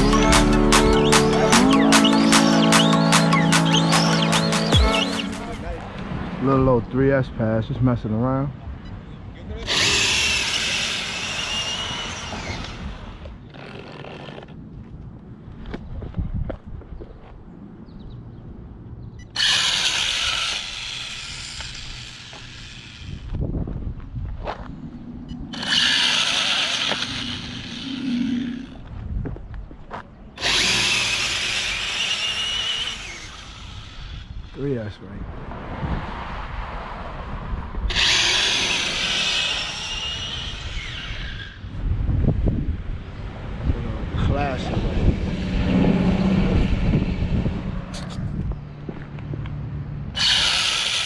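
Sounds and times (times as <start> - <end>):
high-pitched motor and gears whirr: 0.0 - 5.8, 9.6 - 14.5, 19.2 - 23.4, 24.9 - 28.8, 30.4 - 34.6, 37.9 - 41.9, 44.0 - 49.1, 50.1 - 51.0
wind rumble on microphone: 14.6 - 19.2, 22.8 - 25.6, 27.2 - 31.6, 33.0 - 50.2.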